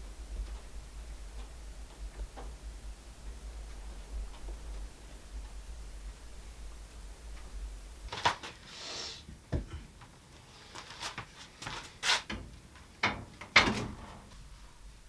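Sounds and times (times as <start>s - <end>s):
sharp knocks and clunks: 9.5s - 9.9s.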